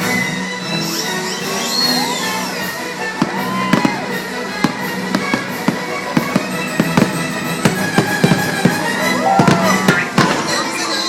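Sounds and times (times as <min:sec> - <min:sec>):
fireworks show music: 0:00.0 - 0:11.0
fireworks popping and banging: 0:03.0 - 0:11.0.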